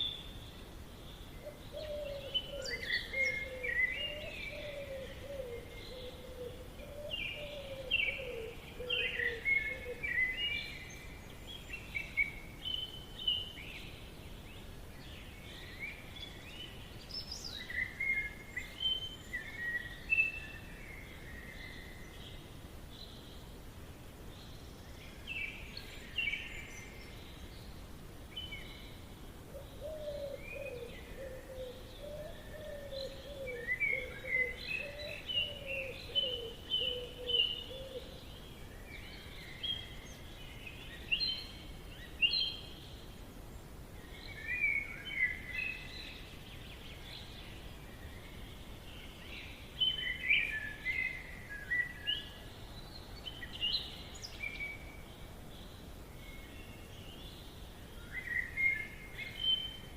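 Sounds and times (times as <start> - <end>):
lower wavering bird calls: 0.0 - 13.7, 28.4 - 43.2
background hiss: 0.0 - 59.9
songbirds chirping and trilling: 0.0 - 59.9.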